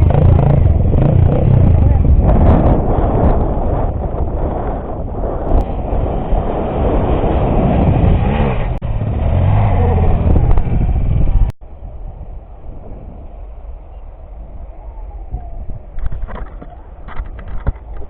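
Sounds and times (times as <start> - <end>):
motorcycle engine revving: 0.0 - 11.6.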